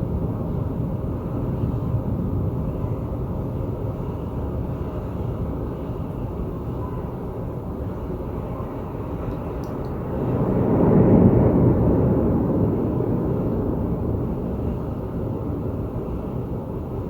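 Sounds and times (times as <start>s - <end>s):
thunder rumbling: 9.8s - 16.5s.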